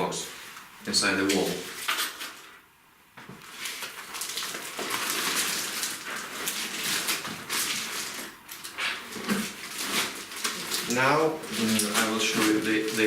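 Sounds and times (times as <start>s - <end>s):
packaging rustling and crinkling: 3.2s - 13.0s.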